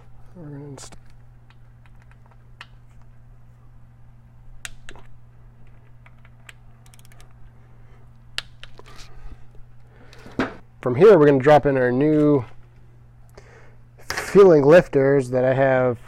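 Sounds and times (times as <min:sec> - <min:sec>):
steady low hum: 0:00.0 - 0:16.0
ratchet clicking: 0:06.8 - 0:07.3.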